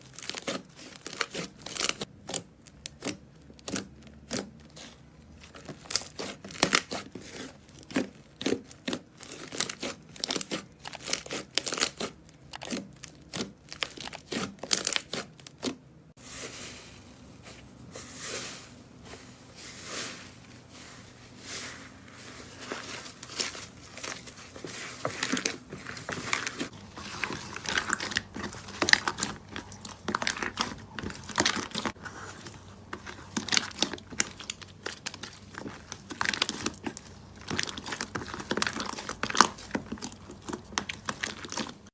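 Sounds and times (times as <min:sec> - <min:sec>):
slime squished by hand: 0:17.9 - 0:41.9.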